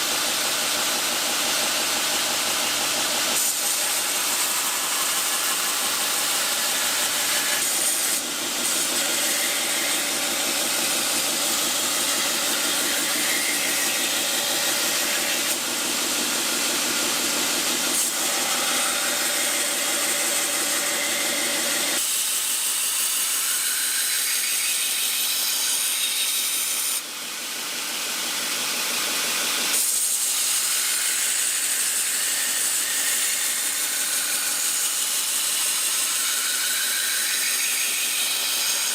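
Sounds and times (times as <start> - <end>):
belt grinder grinding steel blade: 0.0 - 38.9.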